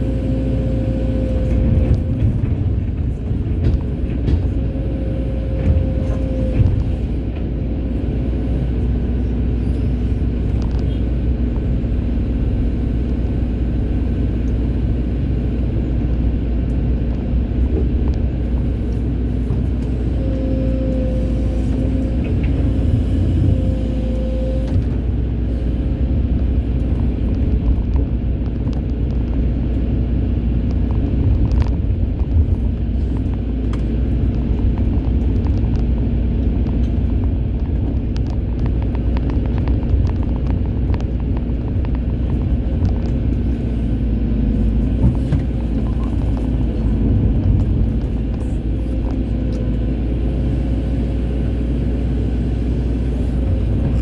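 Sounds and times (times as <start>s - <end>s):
excavator diesel engine rumbling: 0.0s - 54.0s
hydraulic whine: 18.6s - 26.1s.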